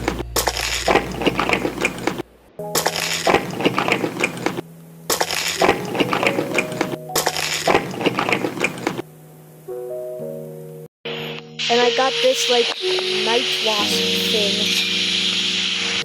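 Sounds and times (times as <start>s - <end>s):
soft background music: 0.0s - 16.0s
crunching of crisp food chewed: 2.8s - 9.0s.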